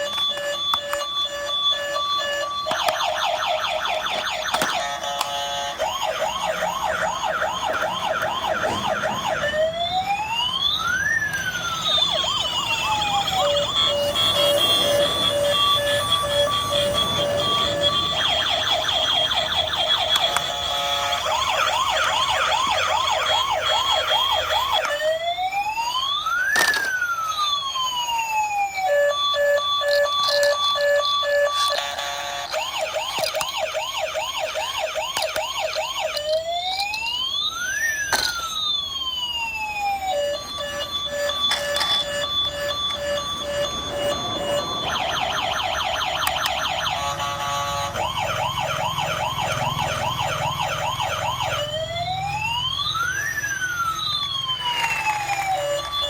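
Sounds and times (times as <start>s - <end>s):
electronic toy siren: 0.0s - 56.0s.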